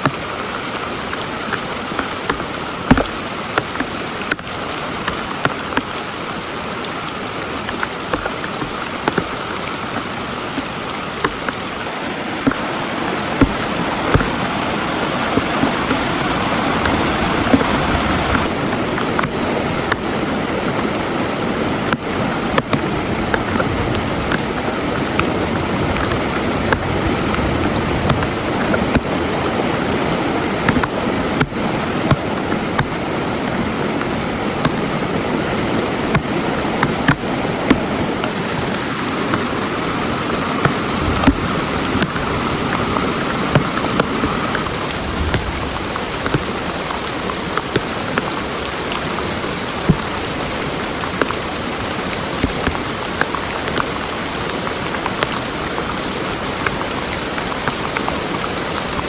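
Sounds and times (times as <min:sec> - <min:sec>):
heavy rain falling: 0:00.0 - 0:59.0
single raindrop hits: 0:40.6 - 0:48.4.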